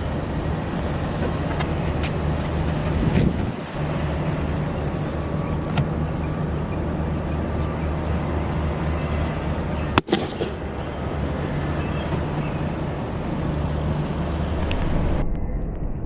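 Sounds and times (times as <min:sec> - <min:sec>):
low rumble: 0:09.0 - 0:16.0.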